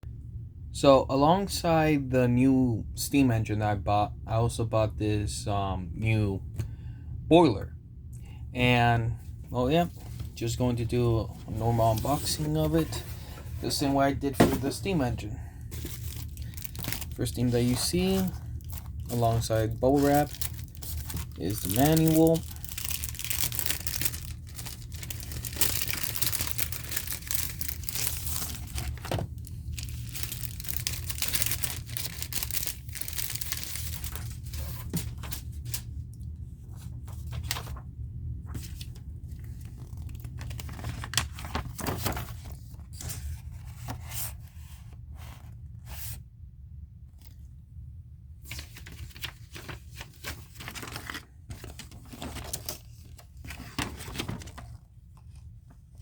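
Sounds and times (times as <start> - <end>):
bubble wrap crinkling and tearing: 15.6 - 35.8, 39.3 - 42.2, 48.6 - 54.8.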